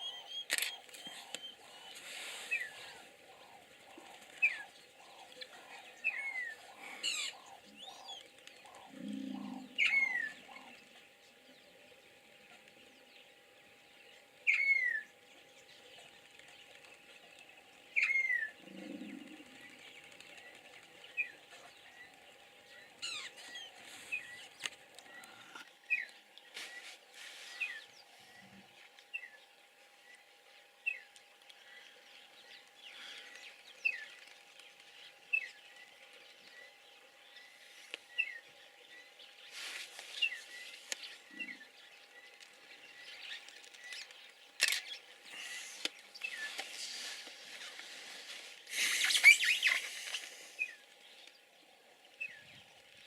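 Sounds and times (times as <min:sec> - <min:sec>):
birds chirping: 0:00.0 - 0:53.0.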